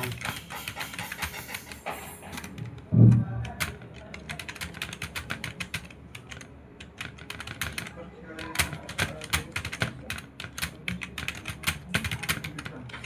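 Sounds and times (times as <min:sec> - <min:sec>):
keyboard typing clicks: 0:00.0 - 0:13.0.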